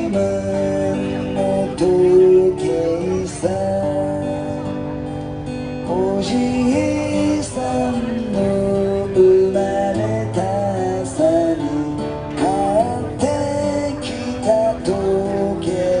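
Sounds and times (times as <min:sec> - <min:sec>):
acoustic guitar melody: 0:00.0 - 0:16.0.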